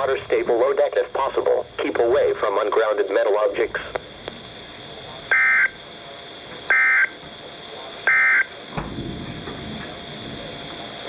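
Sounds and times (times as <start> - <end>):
radio hiss: 0.0 - 8.8
two-tone data bursts: 5.3 - 5.8, 6.7 - 7.2, 8.1 - 8.5.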